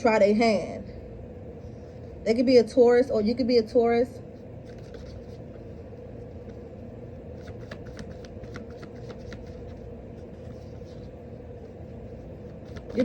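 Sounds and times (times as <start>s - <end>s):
low background hum: 0.0s - 13.0s
cards being shuffled: 4.6s - 13.0s.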